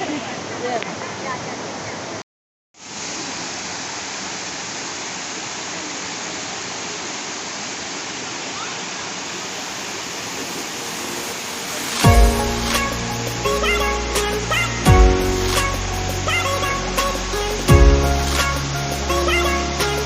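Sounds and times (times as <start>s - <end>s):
waterfall roaring: 2.8s - 20.0s
music with strong bass: 12.0s - 20.0s.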